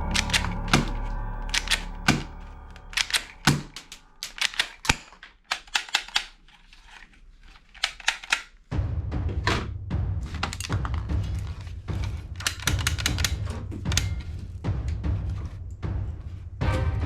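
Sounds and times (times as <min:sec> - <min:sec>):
low steady hum: 0:00.0 - 0:04.5
toy guns clicking: 0:03.0 - 0:08.6, 0:12.4 - 0:13.4.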